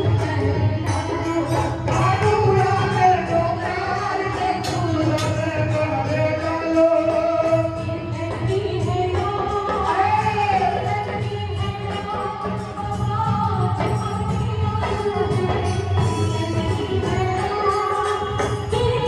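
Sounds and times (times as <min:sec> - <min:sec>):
sustained sung voices: 0:00.0 - 0:07.6
percussion strokes: 0:00.0 - 0:19.0.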